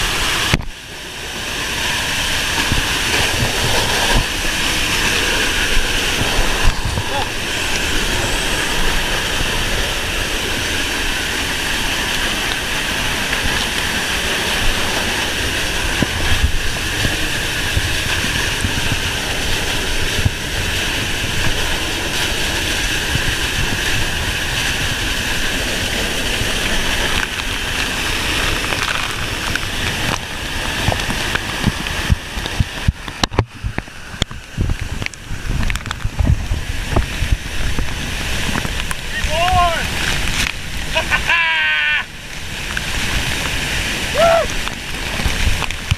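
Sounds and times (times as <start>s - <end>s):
waterfall rushing: 0.0s - 45.9s.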